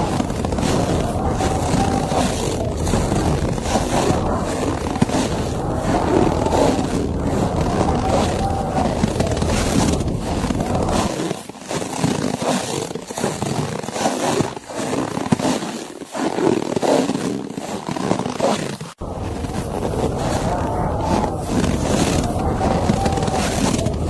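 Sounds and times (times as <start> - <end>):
blizzard wind gusting: 0.0 - 11.1, 19.0 - 24.0
deep rumble: 0.0 - 11.1.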